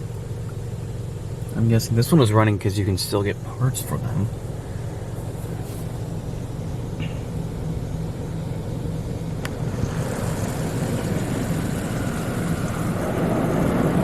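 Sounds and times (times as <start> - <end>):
pump hum: 0.0 - 14.0
water spray hissing on car: 3.7 - 14.0.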